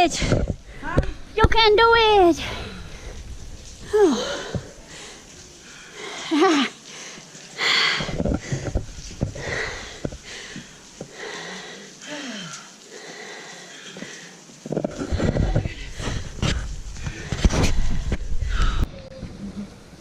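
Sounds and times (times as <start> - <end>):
person breathing hard: 3.9 - 14.4.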